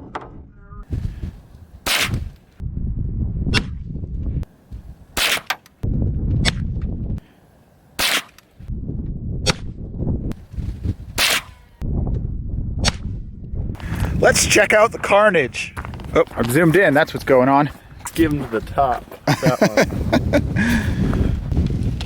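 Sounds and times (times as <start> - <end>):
low rumble: 2.6 - 4.5, 5.8 - 7.2, 8.6 - 10.4, 11.8 - 14.2.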